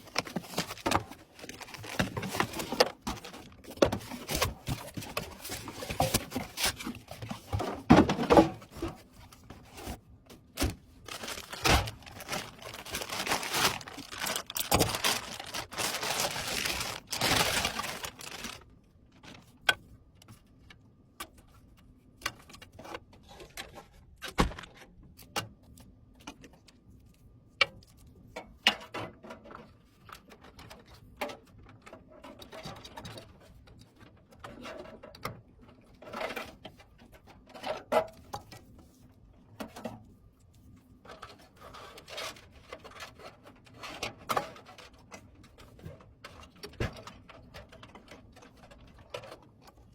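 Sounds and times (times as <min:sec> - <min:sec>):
packaging rustling and crinkling: 0:00.0 - 0:19.6.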